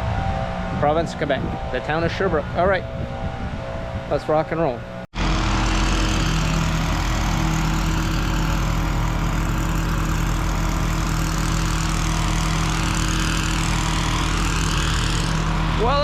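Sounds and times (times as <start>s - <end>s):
engine droning steadily: 4.1s - 16.0s.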